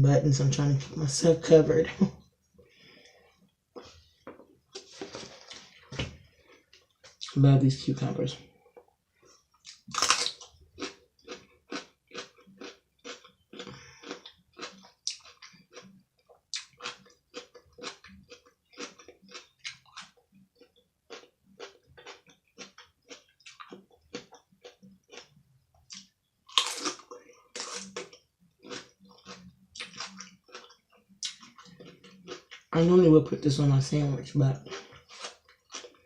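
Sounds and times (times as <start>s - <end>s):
chewing crunchy cucumber: 8.7s - 32.9s, 34.2s - 36.0s.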